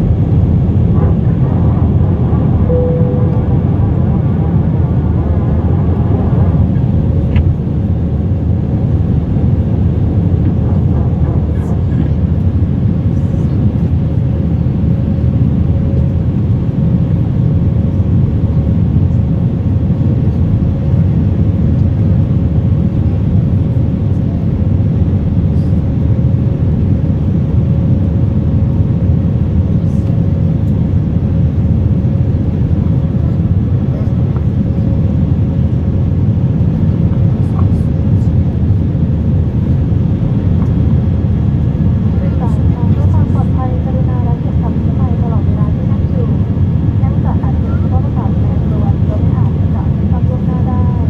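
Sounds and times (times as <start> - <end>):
jet engine rumble in cabin: 0.0 - 51.0
steady hum: 0.0 - 51.0.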